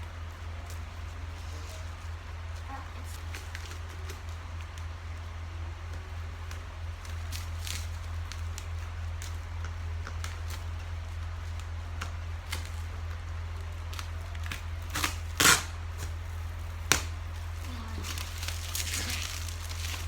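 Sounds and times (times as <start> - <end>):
low electrical hum: 0.0 - 20.0
packaging crackle: 13.9 - 16.1, 16.7 - 20.0
plastic packaging rustling: 13.9 - 20.0.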